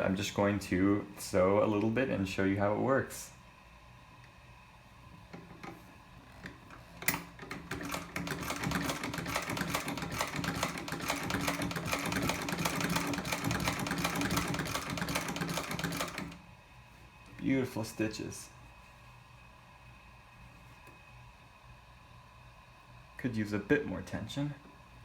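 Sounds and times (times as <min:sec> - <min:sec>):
sewing machine clattering: 0:06.4 - 0:16.4
sewing machine clicks: 0:06.4 - 0:16.4.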